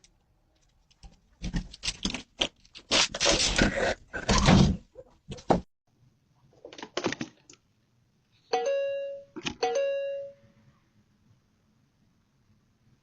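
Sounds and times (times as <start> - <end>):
two-tone doorbell chime: 8.5 - 10.5.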